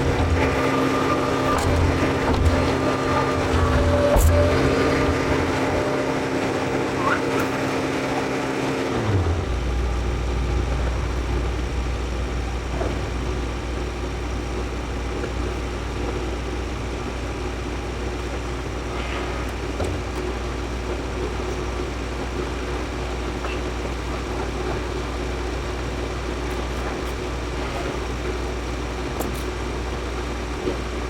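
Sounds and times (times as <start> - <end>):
diesel engine revving and idling: 0.0 - 15.3.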